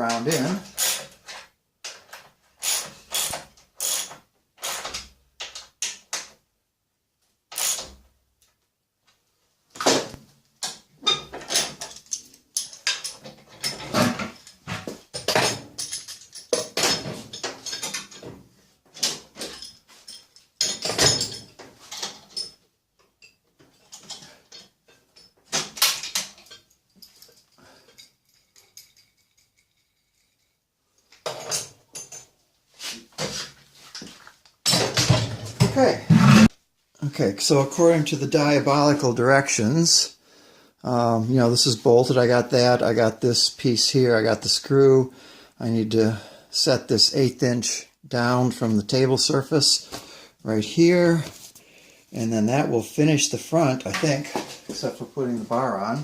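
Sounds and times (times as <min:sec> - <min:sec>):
metal tools clanking and rattling: 0:10.6 - 0:18.4, 0:19.0 - 0:22.6, 0:23.2 - 0:30.6, 0:31.2 - 0:32.3.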